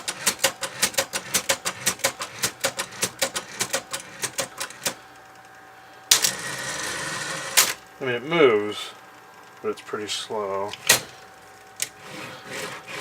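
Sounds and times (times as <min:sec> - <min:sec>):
typewriter keys clacking: 0:00.0 - 0:05.0.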